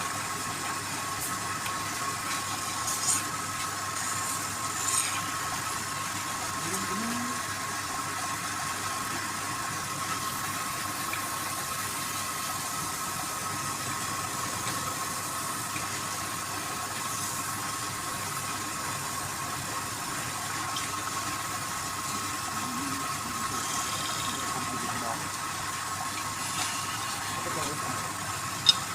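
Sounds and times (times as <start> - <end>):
wood lathe whining: 23.2 - 25.1.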